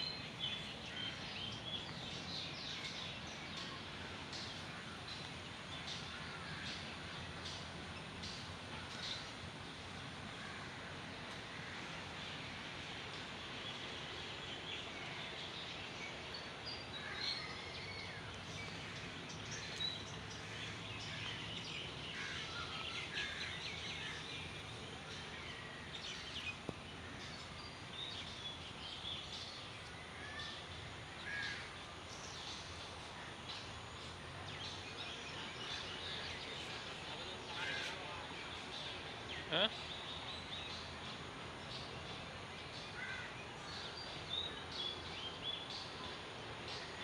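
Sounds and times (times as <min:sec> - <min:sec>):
outdoor background hiss: 0:00.0 - 0:47.0
birds chirping: 0:13.0 - 0:47.0.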